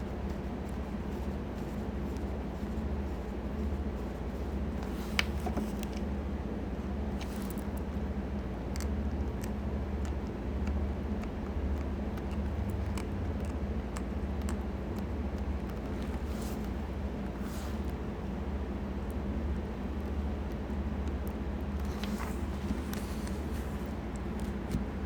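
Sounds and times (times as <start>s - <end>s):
small clicks and taps: 0.2s - 6.2s, 6.8s - 25.0s.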